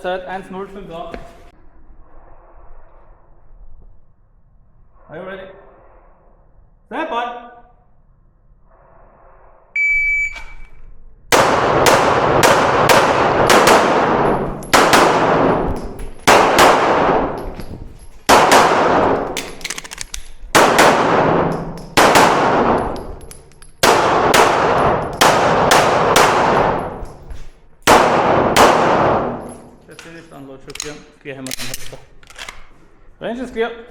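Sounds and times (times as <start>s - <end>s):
shot timer beep: 9.8s - 10.6s
pistol shots echoing: 11.3s - 17.5s, 18.3s - 19.8s, 20.5s - 27.2s, 27.8s - 29.8s.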